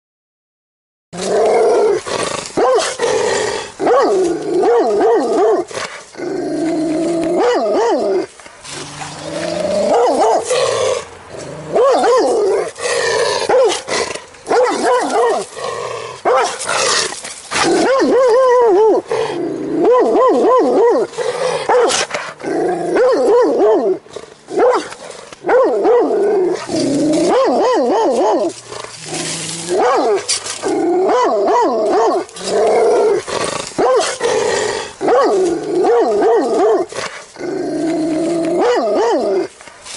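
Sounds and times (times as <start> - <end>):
dog barking: 2.6 - 3.0, 7.4 - 8.0, 9.9 - 10.5, 11.8 - 12.4, 13.5 - 13.8, 14.5 - 15.4, 16.3 - 16.6, 21.7 - 22.0, 24.6 - 24.9, 25.5 - 26.1, 31.1 - 32.2, 33.8 - 34.2, 35.1 - 36.8, 38.6 - 39.2.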